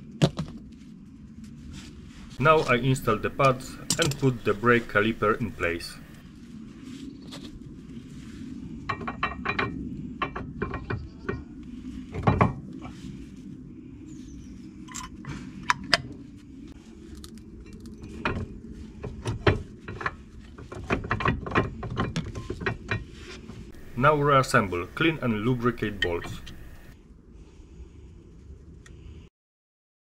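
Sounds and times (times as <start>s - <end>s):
metallic clinks of brake parts: 3.4s - 4.5s.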